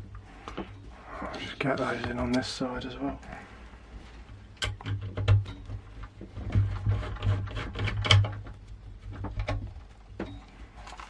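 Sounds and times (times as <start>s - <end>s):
small metal clicks and knocks: 4.6s - 11.0s.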